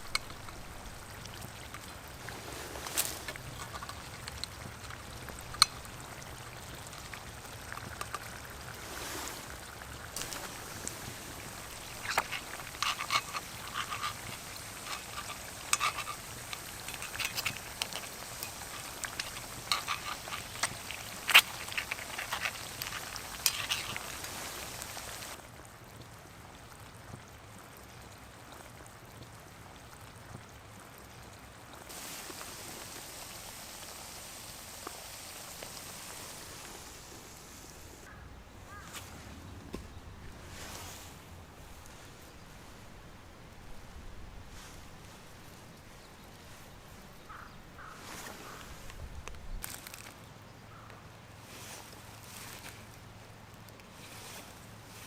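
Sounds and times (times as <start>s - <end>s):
oil sizzling and popping: 0.0s - 38.1s, 48.1s - 50.2s.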